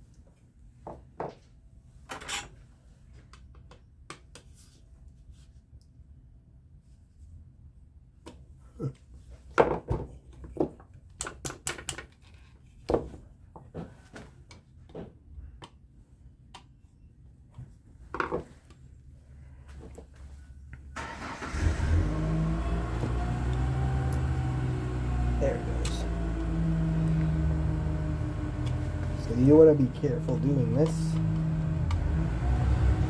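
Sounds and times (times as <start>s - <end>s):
low hum with hiss: 25.3s - 32.0s.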